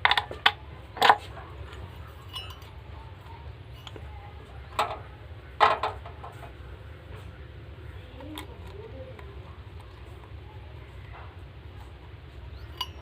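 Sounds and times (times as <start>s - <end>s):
metal clinking on steel jar: 2.1s - 2.8s, 12.7s - 13.0s.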